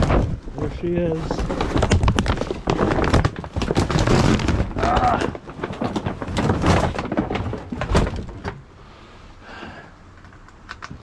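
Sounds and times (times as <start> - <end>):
faint rustling: 0.0 - 9.4
knocks and thuds: 1.4 - 8.6.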